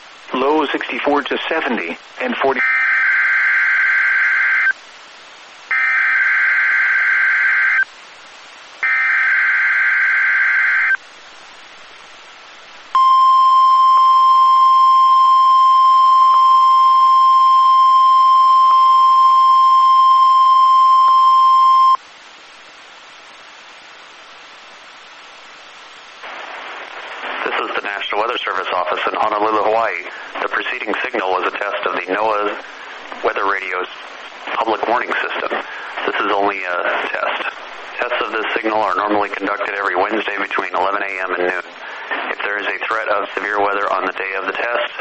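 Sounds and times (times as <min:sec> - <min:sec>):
radio hiss: 0:00.0 - 0:45.0
steady warning alarm tone: 0:13.0 - 0:22.0.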